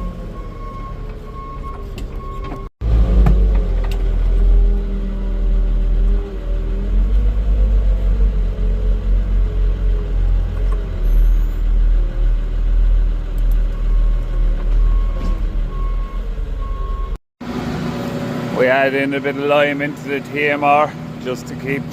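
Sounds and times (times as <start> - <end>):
reversing alarm beeping: 0.0 - 2.7, 13.7 - 17.2
diesel engine running under load: 0.0 - 21.9.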